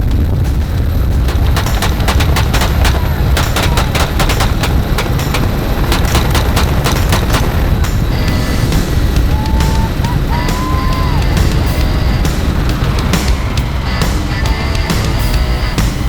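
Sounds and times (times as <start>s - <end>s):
helicopter rumble: 0.0s - 16.0s
rifle gunfire: 1.2s - 8.4s.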